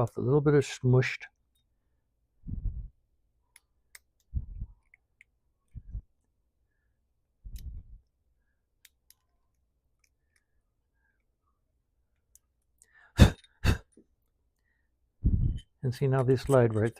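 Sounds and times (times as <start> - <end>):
hand tool scraping metal: 15.6 - 16.9
hand tool clicking on metal: 16.0 - 16.9.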